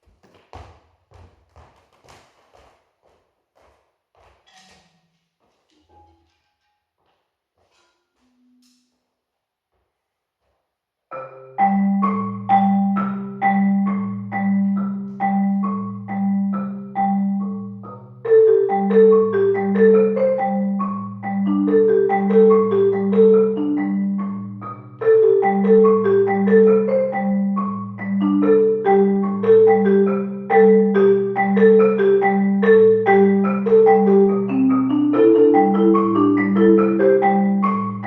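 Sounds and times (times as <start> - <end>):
marimba mallet notes: 11.1 - 38.0.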